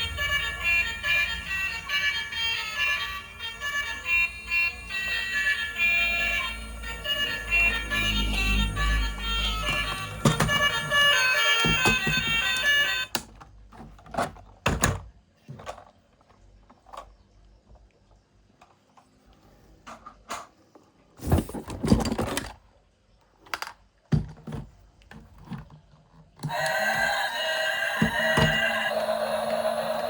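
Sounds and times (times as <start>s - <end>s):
background music: 0.0s - 13.2s
plastic toy vehicles clicking: 4.9s - 14.6s, 21.4s - 24.1s.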